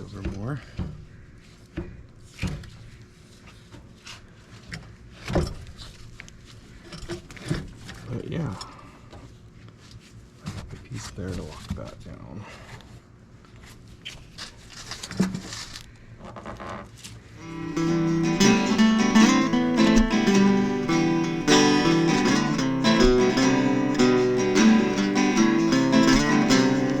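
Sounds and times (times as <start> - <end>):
acoustic guitar music: 17.4 - 27.0.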